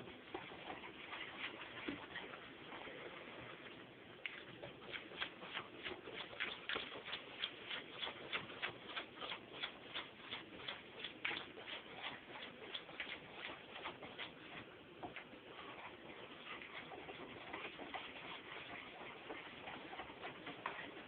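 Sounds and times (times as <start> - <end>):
whisk clicking against a bowl: 4.9 - 15.9, 16.5 - 21.0.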